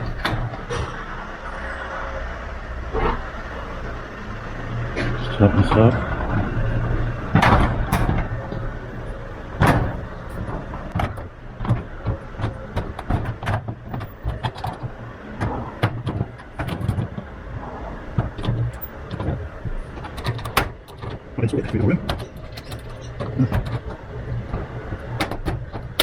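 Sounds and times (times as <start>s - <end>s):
hand tools clicking and knocking: 18.2s - 26.0s.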